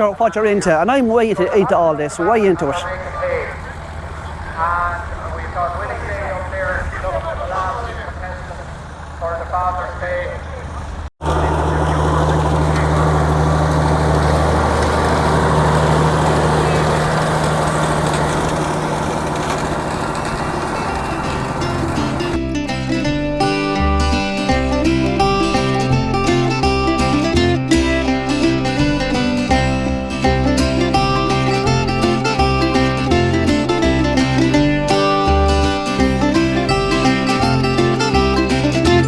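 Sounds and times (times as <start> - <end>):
engine idling: 0.0 - 39.0
bluegrass banjo picking over beat: 19.4 - 39.0.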